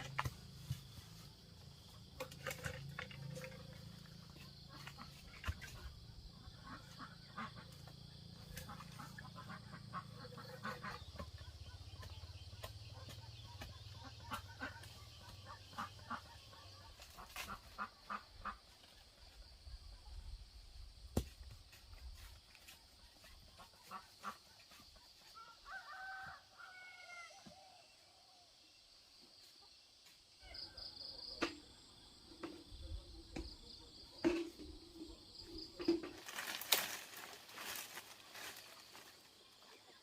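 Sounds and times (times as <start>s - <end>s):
domestic fowl calling: 1.8s - 19.0s, 22.7s - 28.1s
knocks and rustling: 32.3s - 39.1s.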